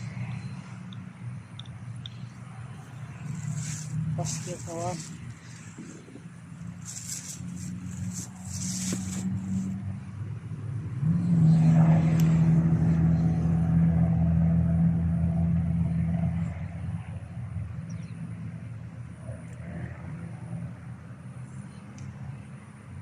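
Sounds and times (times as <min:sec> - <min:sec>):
small engine running: 0:02.8 - 0:09.8
clicks and rustles: 0:03.2 - 0:09.7.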